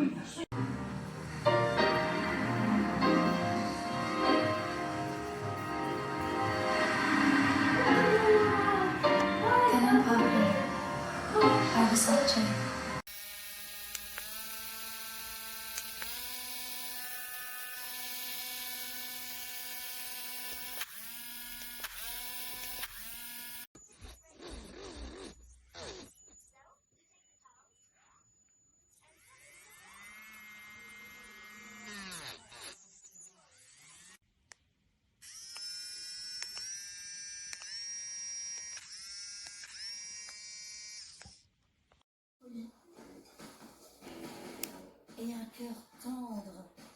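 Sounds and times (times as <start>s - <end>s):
electric nail drill whining: 5.2s - 10.2s, 12.6s - 23.7s, 29.1s - 34.2s, 35.2s - 41.5s
drill clicks: 13.2s - 23.6s, 35.3s - 41.4s.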